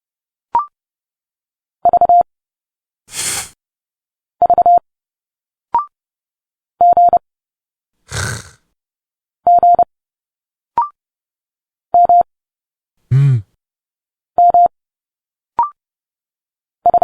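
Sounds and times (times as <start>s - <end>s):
short speech sounds: 3.1s - 3.5s.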